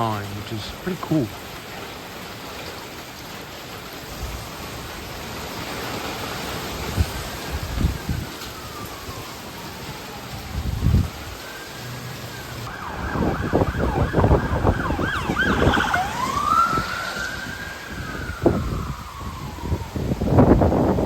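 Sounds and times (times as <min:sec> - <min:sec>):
rain: 0:00.0 - 0:21.0
wind gusts on microphone: 0:03.9 - 0:21.0
emergency siren wailing: 0:07.0 - 0:21.0.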